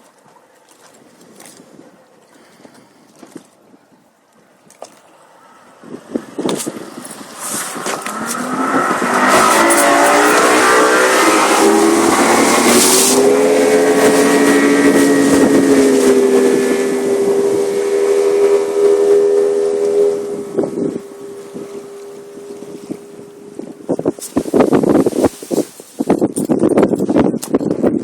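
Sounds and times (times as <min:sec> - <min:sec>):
wind and water hiss: 0:00.0 - 0:27.6
outboard motor accelerating: 0:05.2 - 0:25.2.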